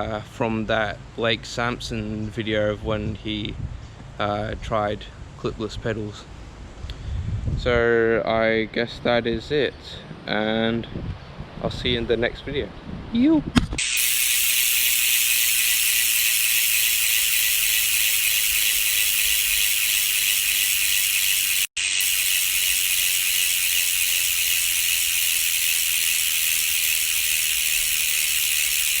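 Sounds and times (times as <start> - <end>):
bicycle freehub buzzing: 13.8 - 29.0.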